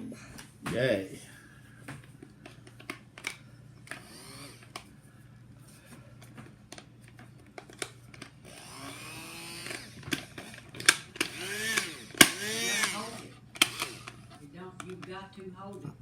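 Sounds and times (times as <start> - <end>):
electric blender running: 3.2 - 4.9, 7.7 - 15.0.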